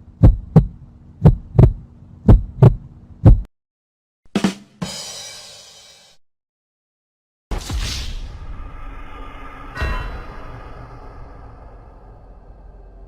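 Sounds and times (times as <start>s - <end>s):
heartbeat thumps: 0.0s - 3.5s
crash-like hit with ringing hiss: 7.5s - 12.9s.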